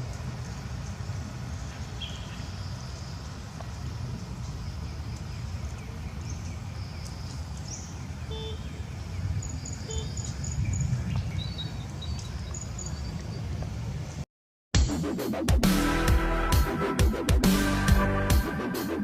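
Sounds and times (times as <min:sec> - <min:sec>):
birds chirping: 0:00.0 - 0:14.2.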